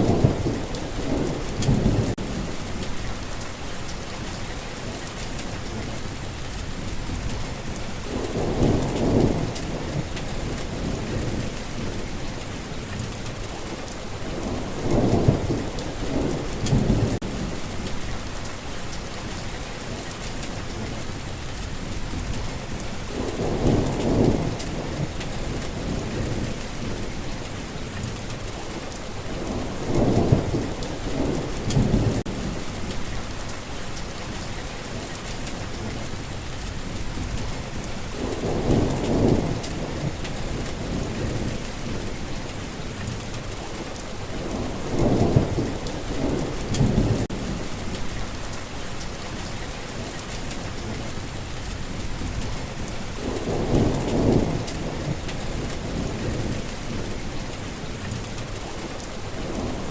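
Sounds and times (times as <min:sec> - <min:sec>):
thunder rolling: 0:00.0 - 0:03.5, 0:06.7 - 0:12.7, 0:13.3 - 0:18.5, 0:21.8 - 0:27.7, 0:28.5 - 0:33.6, 0:36.8 - 0:42.8, 0:43.5 - 0:48.6, 0:51.8 - 0:57.6
rain hissing on foliage: 0:00.0 - 0:59.9.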